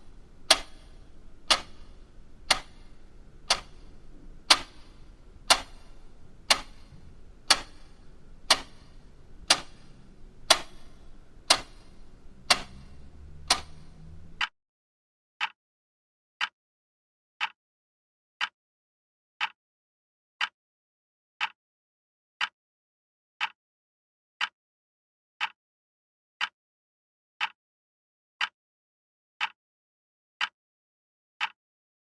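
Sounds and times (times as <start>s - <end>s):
faint low hum: 0.0s - 14.4s
clock ticking: 0.0s - 14.5s.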